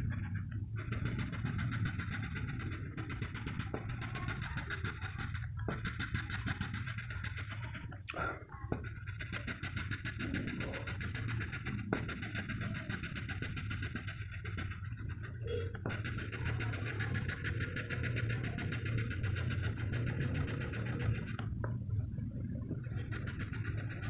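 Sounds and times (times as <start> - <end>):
pencil shading on paper: 0.0 - 24.0
steady low hum: 0.0 - 24.0
sharp taps: 2.9 - 6.9, 7.9 - 14.8.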